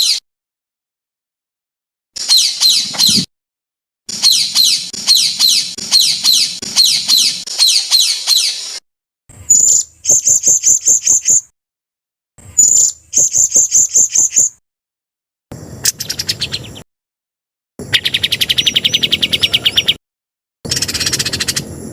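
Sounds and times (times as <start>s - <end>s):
sharp bird chips: 0.0s - 0.2s, 2.2s - 3.3s, 4.1s - 8.8s, 9.5s - 11.5s, 12.4s - 14.6s, 15.8s - 16.8s, 17.8s - 20.0s, 20.6s - 21.7s
high bird whistle: 2.2s - 3.3s, 4.1s - 8.8s, 9.5s - 11.5s, 12.6s - 14.6s
songbird song: 2.2s - 3.3s, 4.1s - 11.5s, 12.4s - 14.6s, 15.5s - 16.9s, 17.8s - 20.0s, 20.7s - 21.9s.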